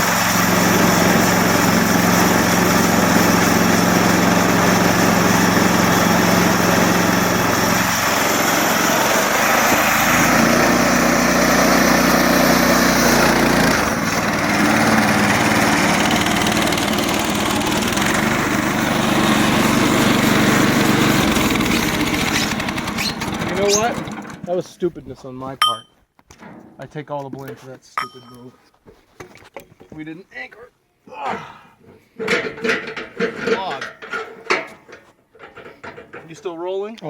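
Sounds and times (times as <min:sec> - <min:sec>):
small gasoline engine running: 0:00.0 - 0:24.5.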